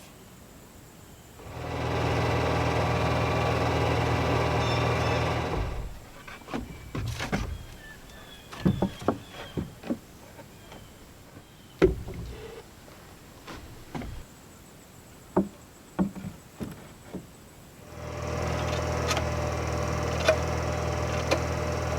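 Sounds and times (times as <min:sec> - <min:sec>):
power tool motor running: 0:01.4 - 0:06.4, 0:17.8 - 0:21.9
sharp knocks and taps: 0:06.3 - 0:10.0, 0:15.4 - 0:17.3.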